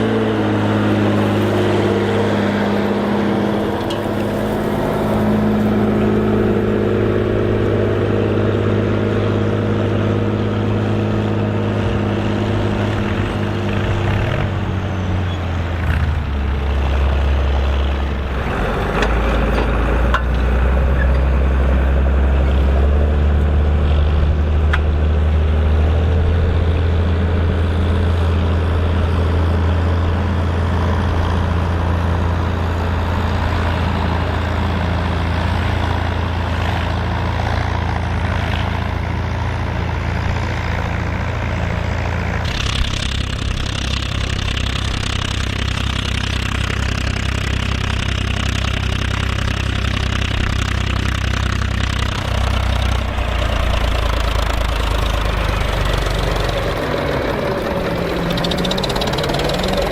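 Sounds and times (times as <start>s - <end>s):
tractor diesel engine under load: 0.0s - 59.9s.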